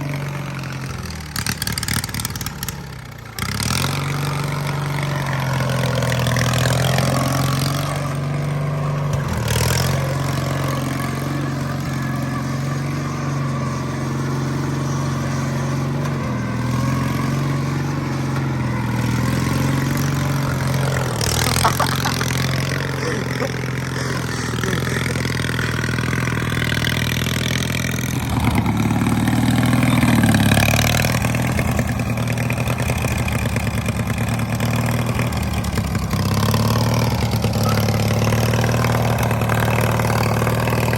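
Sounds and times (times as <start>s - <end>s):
lawnmower engine running: 0.0s - 40.9s.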